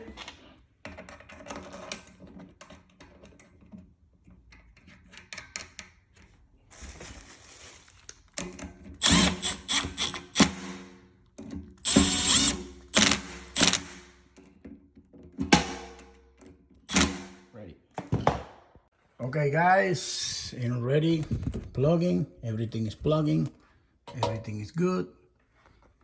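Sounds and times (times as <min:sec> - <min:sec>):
power drill driving screws: 0:09.0 - 0:10.8, 0:11.8 - 0:14.1, 0:16.9 - 0:17.3.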